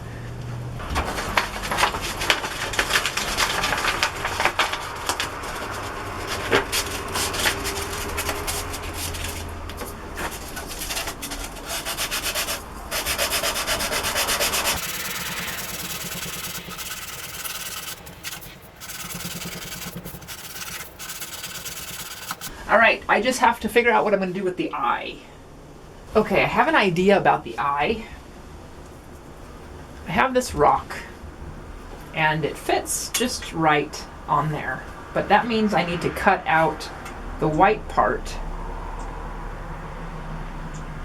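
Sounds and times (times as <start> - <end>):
sandpaper scratching on wood: 1.6 - 22.5.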